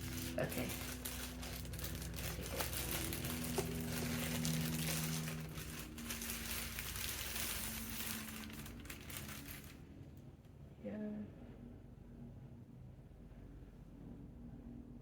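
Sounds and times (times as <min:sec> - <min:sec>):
packaging crinkling and rustling: 0:00.0 - 0:09.9.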